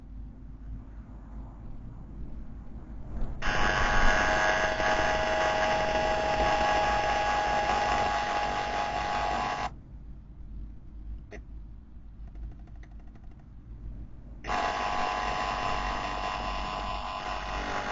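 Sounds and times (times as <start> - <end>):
electronic alarm tones: 3.4 - 9.7, 14.5 - 17.9.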